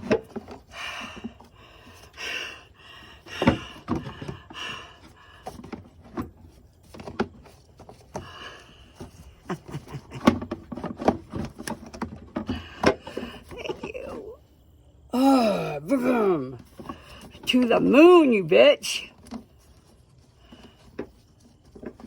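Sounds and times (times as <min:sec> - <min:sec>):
heavy breathing: 0:00.5 - 0:05.8, 0:08.1 - 0:09.7, 0:12.4 - 0:14.4.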